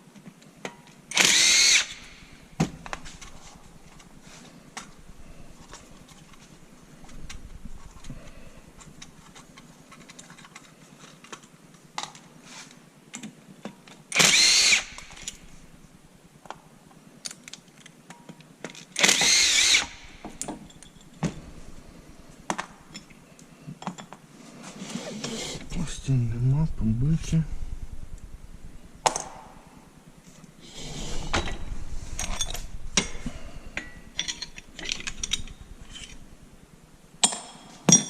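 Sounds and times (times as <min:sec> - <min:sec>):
power drill running: 0:01.1 - 0:02.4, 0:14.1 - 0:15.4, 0:19.0 - 0:20.3
metal parts clicking and knocking: 0:32.2 - 0:36.2.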